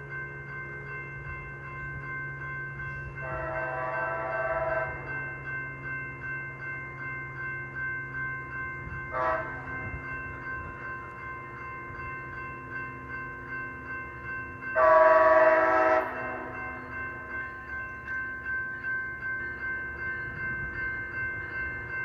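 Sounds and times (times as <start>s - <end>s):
train horn: 3.2s - 5.1s, 9.1s - 9.8s, 14.8s - 16.8s.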